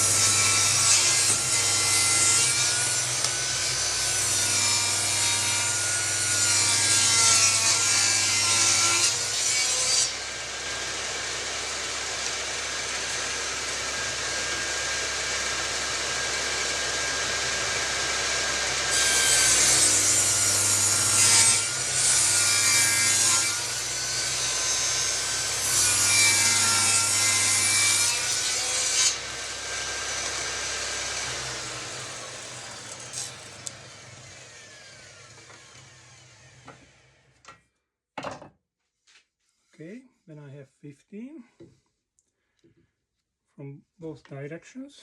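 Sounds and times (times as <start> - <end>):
table saw cutting wood: 0.0 - 37.4
saw blade whine winding down: 29.2 - 37.3.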